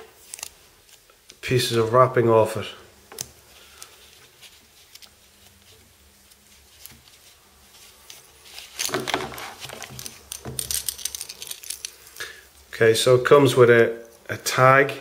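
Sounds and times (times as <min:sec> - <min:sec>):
plastic wrapping crinkling: 0:03.6 - 0:12.3.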